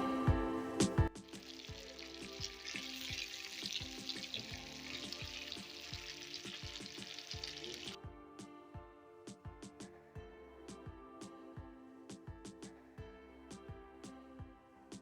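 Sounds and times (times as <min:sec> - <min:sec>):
background music with beat: 0:00.0 - 0:15.0
food sizzling in hot oil: 0:01.2 - 0:08.0.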